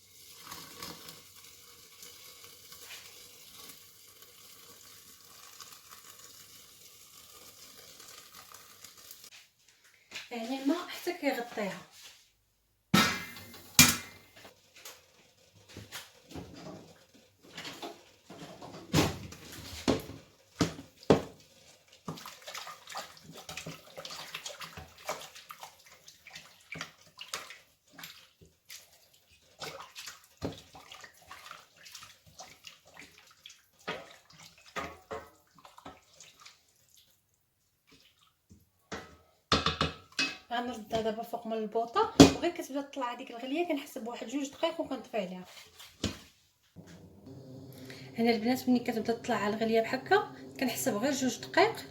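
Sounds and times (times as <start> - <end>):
boiling water pouring into a pot: 0.0 - 9.4, 19.2 - 38.4, 46.8 - 51.9.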